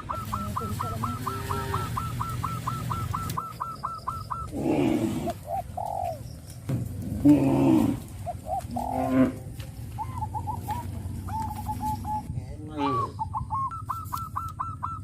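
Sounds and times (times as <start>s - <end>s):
cattle mooing: 7.0s - 9.6s.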